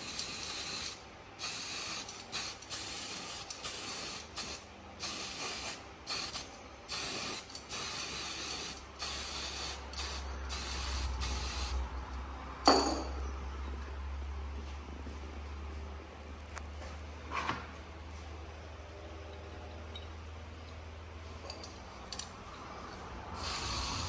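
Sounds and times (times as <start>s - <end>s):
hissing spray bursts: 0.0s - 11.8s, 23.4s - 24.0s.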